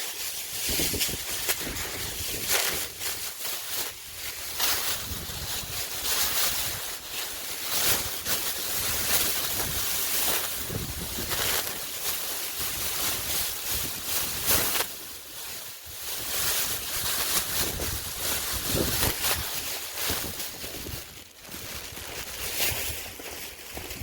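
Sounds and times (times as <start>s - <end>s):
wind gusting on microphone: 0.5s - 3.3s, 4.0s - 6.8s, 10.5s - 11.8s, 16.2s - 22.0s.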